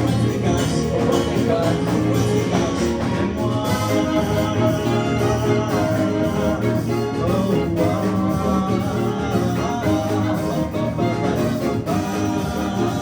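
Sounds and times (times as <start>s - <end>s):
live instrumental band music: 0.0s - 13.0s.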